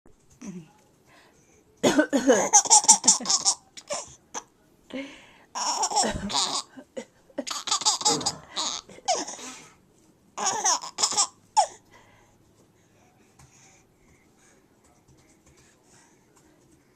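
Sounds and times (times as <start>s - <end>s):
baby laughing: 2.4s - 4.1s, 5.6s - 6.8s, 7.4s - 9.6s, 10.4s - 11.8s.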